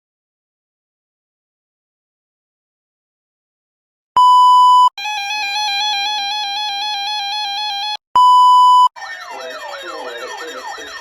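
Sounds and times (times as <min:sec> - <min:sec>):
steady electronic beep: 0:04.2 - 0:04.9, 0:08.2 - 0:11.0
fast-warbling alert tones: 0:09.0 - 0:11.0
rising and falling siren wails: 0:09.0 - 0:11.0.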